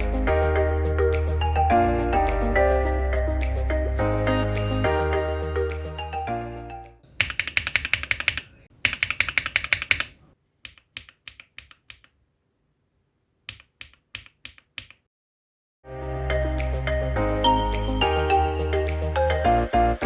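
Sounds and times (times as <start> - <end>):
background music: 0.0 - 7.0, 15.9 - 20.0
mechanical keyboard typing: 7.1 - 12.2, 13.5 - 15.0.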